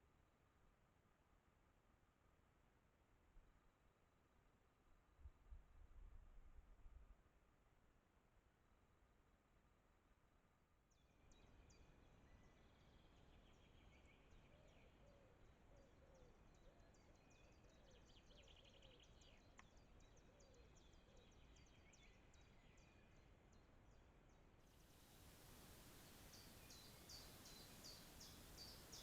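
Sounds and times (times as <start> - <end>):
steady background hiss: 24.7 - 29.0
birds chirping and trilling: 25.8 - 29.0.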